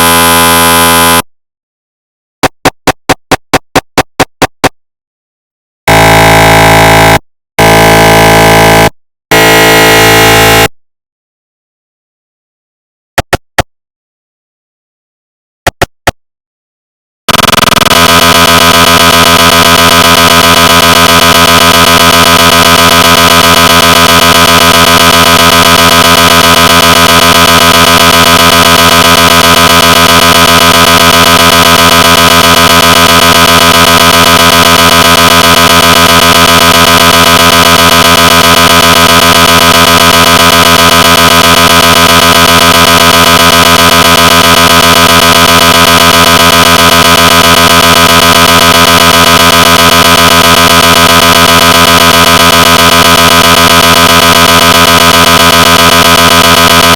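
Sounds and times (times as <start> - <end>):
mri scanner pulsing buzz: 0.0 - 1.2, 17.3 - 56.9
short electronic blips: 0.0 - 1.3, 2.4 - 4.7, 5.9 - 10.7, 17.3 - 56.9.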